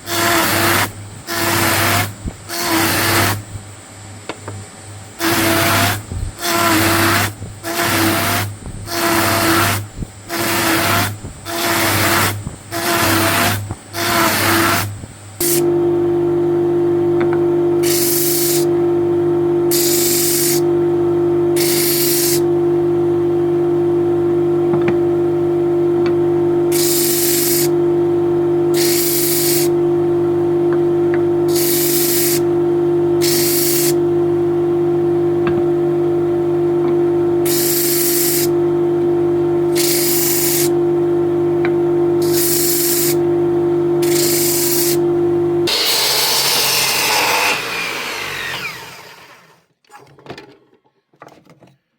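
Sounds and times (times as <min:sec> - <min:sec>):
machine humming: 0:00.0 - 0:49.6
hissing air bursts: 0:28.8 - 0:29.7, 0:31.5 - 0:32.4, 0:37.4 - 0:38.5, 0:39.7 - 0:40.7, 0:42.2 - 0:43.2, 0:44.0 - 0:45.0.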